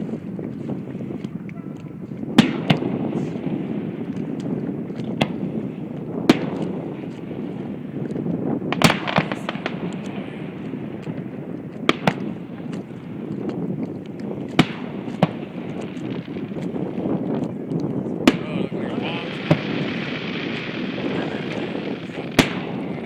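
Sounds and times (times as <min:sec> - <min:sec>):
fireworks bangs: 0:02.2 - 0:23.0.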